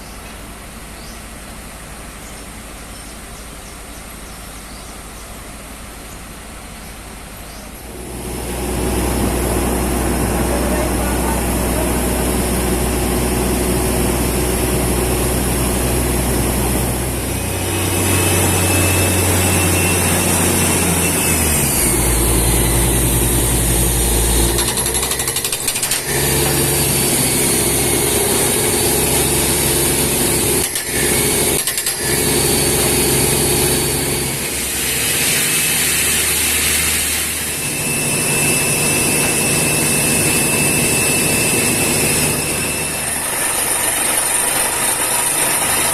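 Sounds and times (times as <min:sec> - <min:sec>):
drilling rig engine: 0:07.8 - 0:45.9
drill hammering rock: 0:17.6 - 0:45.9.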